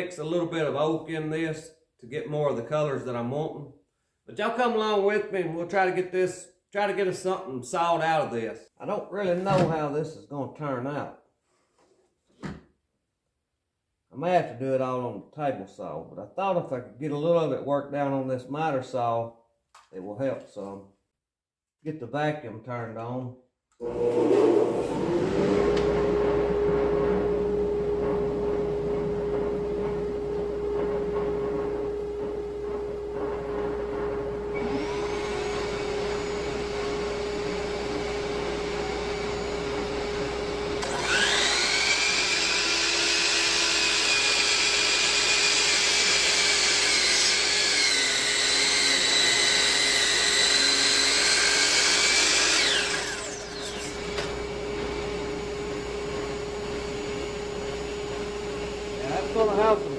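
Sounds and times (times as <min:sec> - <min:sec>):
miter saw whining and cutting wood: 0:23.8 - 0:59.9
shop vacuum running: 0:23.8 - 0:59.9.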